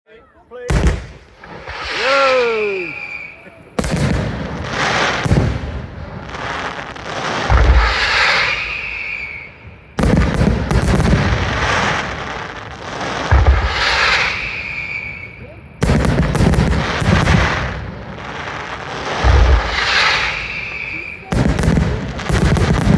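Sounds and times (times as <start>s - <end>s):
deep boom: 0.7s - 2.1s, 7.4s - 8.2s, 13.3s - 14.0s, 19.1s - 22.9s
firework shells bursting: 0.7s - 22.9s.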